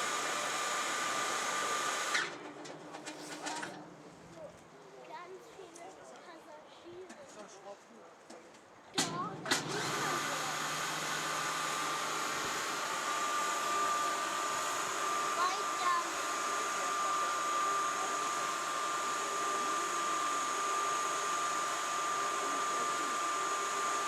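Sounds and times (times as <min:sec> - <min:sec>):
machinery whine: 0:09.0 - 0:24.0.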